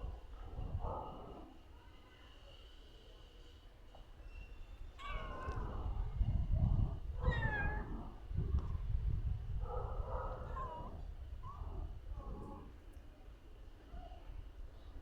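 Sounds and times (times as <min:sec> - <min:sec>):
cat meowing: 0:07.2 - 0:07.9.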